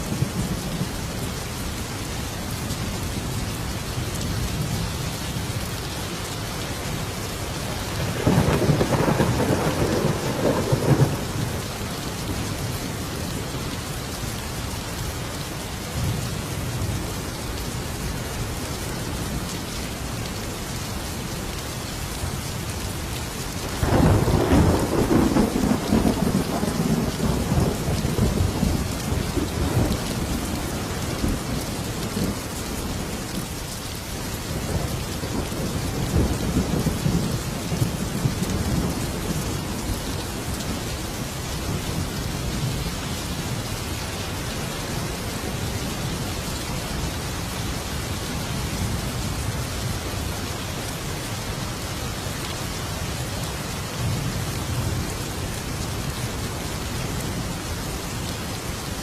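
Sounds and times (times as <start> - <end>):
heavy rain: 0.0 - 59.0
thunder rumbling: 7.8 - 13.6, 23.7 - 33.6.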